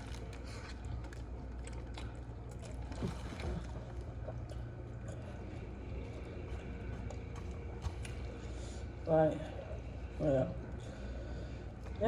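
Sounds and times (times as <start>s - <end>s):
low steady hum: 0.0s - 12.0s
wet squishy chewing: 0.0s - 12.0s.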